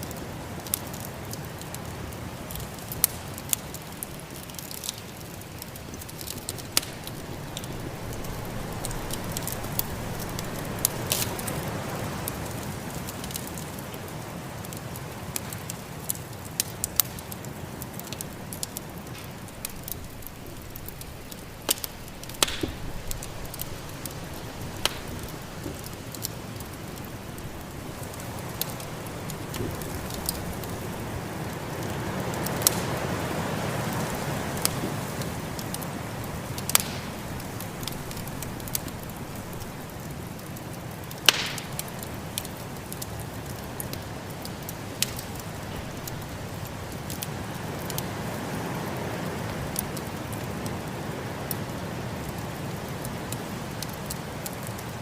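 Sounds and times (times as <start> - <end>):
wood fire crackling and popping: 0.0 - 55.0.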